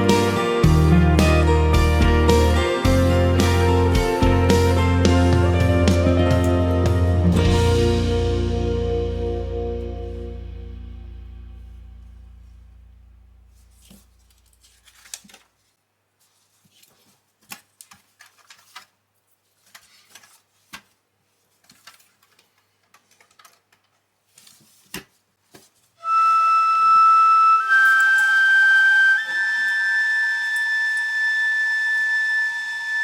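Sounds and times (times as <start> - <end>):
flute-like music: 0.0 - 10.6, 26.0 - 33.0
plastic pieces clicking: 21.6 - 24.0.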